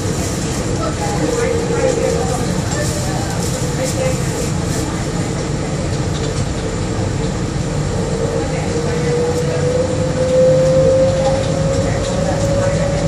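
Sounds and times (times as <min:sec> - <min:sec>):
people mover low rumble: 0:00.0 - 0:13.0
motor whine rising in pitch: 0:08.0 - 0:13.0.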